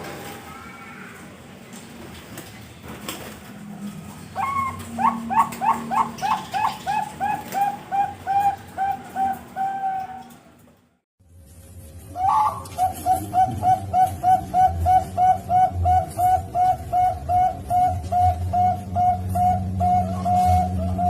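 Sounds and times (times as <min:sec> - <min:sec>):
dove cooing: 0:04.0 - 0:10.6, 0:12.2 - 0:21.0.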